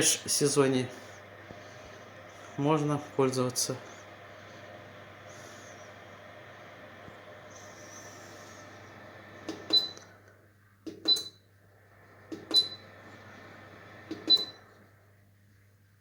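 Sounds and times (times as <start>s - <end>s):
heater fan whirring: 0.0s - 16.0s.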